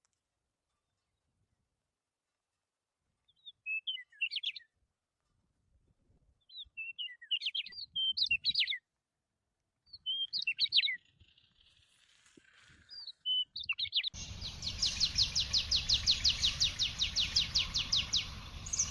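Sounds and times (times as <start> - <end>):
songbird chirping and whistling: 10.0 - 11.0, 13.3 - 18.9.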